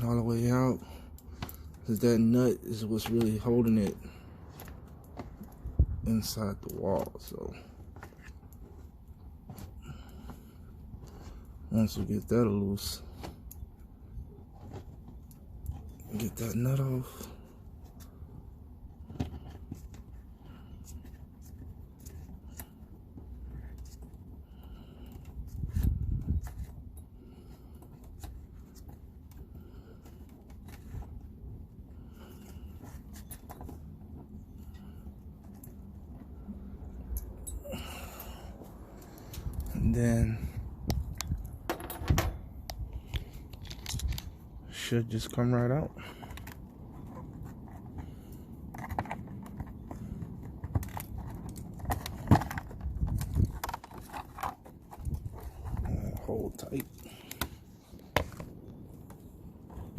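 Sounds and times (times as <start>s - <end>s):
steady low rumble: 33.7s - 59.9s.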